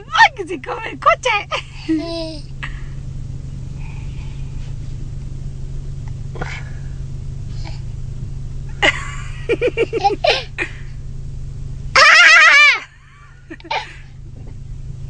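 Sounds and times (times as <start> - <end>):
car engine idling: 0.0 - 15.0
laugh-like vocal bursts: 12.0 - 14.0.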